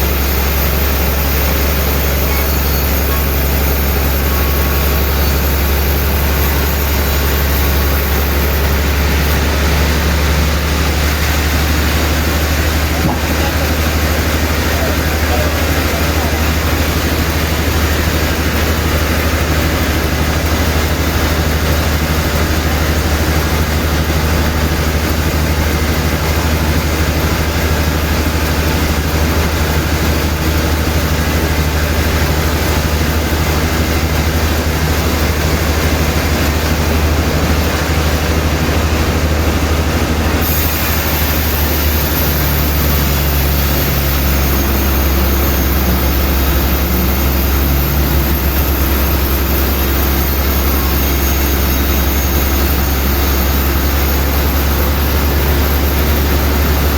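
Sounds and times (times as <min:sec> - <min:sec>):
sawmill machinery droning: 0:00.0 - 0:56.9
high hiss: 0:40.4 - 0:56.9.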